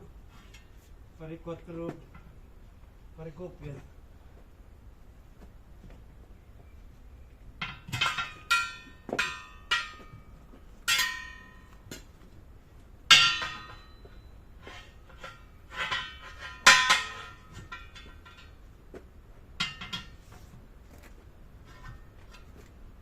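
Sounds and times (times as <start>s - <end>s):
metal clanks with ringing: 7.6s - 11.9s, 13.1s - 18.7s, 19.6s - 20.3s.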